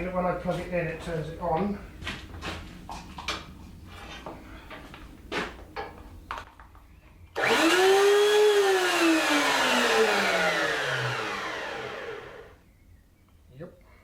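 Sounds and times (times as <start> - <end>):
electric router whine: 7.4 - 12.6.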